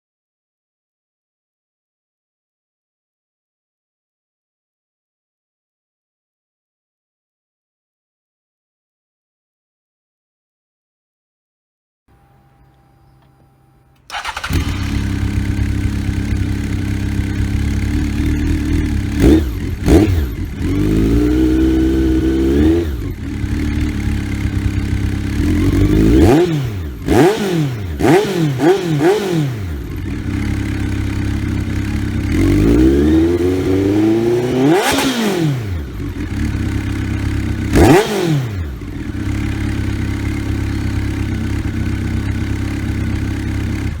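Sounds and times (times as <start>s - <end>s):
motorcycle engine revving: 12.2s - 44.0s.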